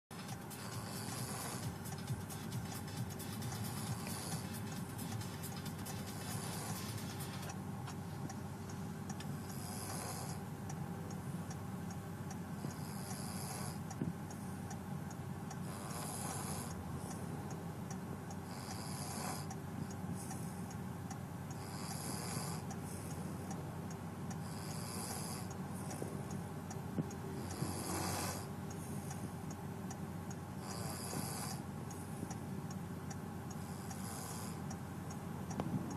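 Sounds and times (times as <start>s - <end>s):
dog snoring: 0.2s - 2.0s, 2.7s - 7.5s, 9.3s - 10.4s, 12.6s - 13.9s, 15.6s - 17.1s, 18.4s - 19.6s, 21.6s - 23.6s, 24.4s - 26.2s, 27.3s - 29.2s, 30.6s - 32.0s, 33.5s - 34.7s.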